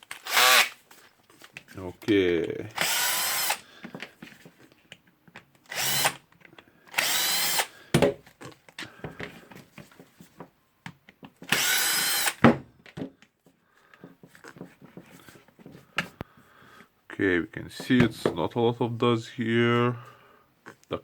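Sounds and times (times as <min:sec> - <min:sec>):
power screwdriver whining: 0:00.0 - 0:00.8, 0:02.7 - 0:03.6, 0:05.6 - 0:06.2, 0:06.9 - 0:07.7, 0:11.5 - 0:12.4.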